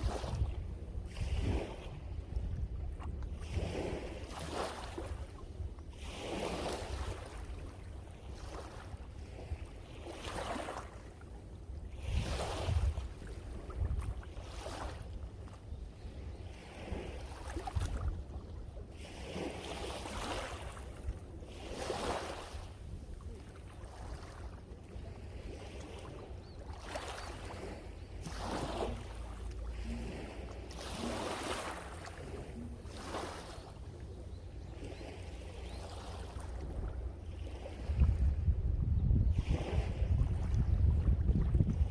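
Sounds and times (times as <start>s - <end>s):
wind on microphone: 0.0s - 7.6s, 11.9s - 15.0s, 16.1s - 18.5s, 36.6s - 41.9s
ocean waves washing in: 25.0s - 38.4s.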